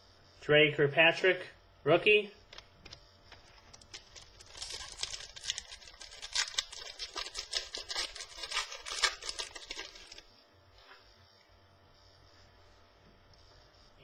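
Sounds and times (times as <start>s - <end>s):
cards clicking and rustling: 2.5s - 10.2s.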